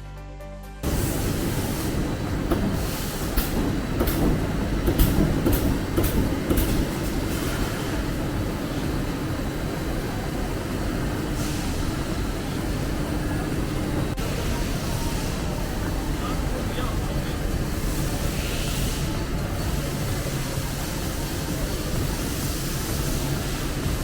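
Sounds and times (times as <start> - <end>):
background music: 0.0 - 0.9
sharp clicks and knocks: 2.5 - 7.2.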